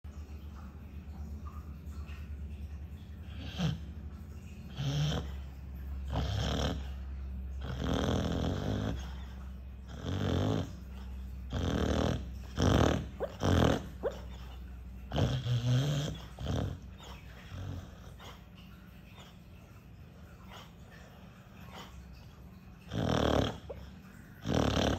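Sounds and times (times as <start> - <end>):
dog snoring loudly: 3.2 - 4.0, 4.6 - 18.5, 22.8 - 24.9.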